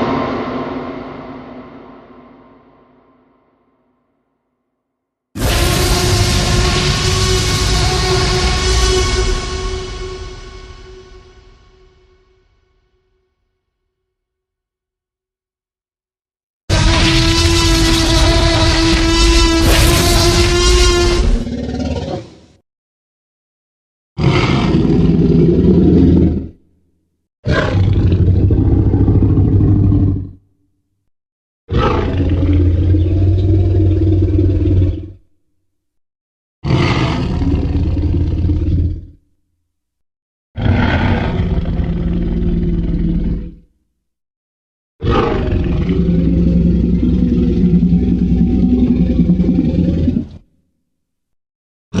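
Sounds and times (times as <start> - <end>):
deep dinosaur roars: 16.7 - 22.4, 24.2 - 26.6, 27.5 - 30.4, 31.7 - 35.2, 36.6 - 39.2, 40.6 - 43.7, 45.0 - 50.5.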